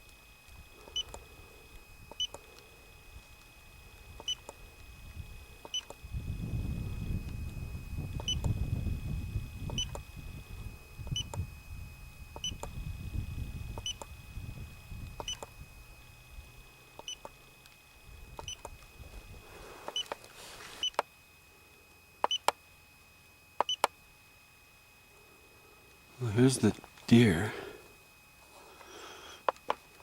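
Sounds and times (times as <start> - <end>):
faint high whine: 0.0 - 30.0
electronic button beeps: 22.2 - 22.5, 23.6 - 23.9.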